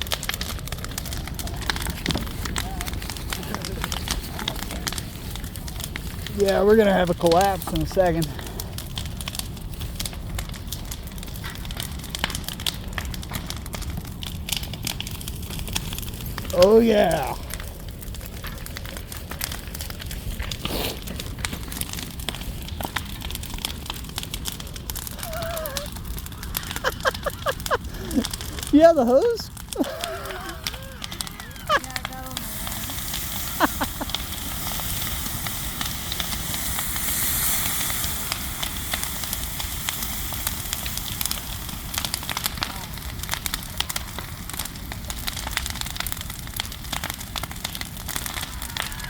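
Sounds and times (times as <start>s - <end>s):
bonfire crackling and popping: 0.0s - 49.0s
low steady fire rumble: 0.0s - 49.0s.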